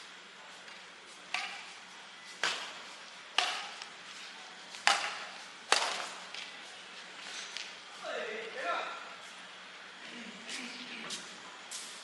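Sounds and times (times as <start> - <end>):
racket hitting shuttlecock: 1.3 - 1.8, 2.4 - 3.9, 4.7 - 6.5.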